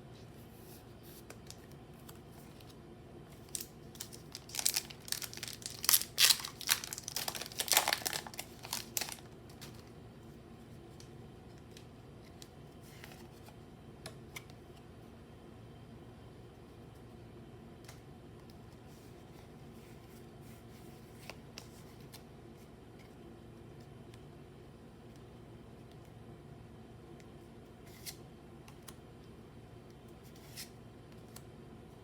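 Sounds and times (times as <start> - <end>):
foil wrapper crinkling and ripping: 3.4 - 9.9.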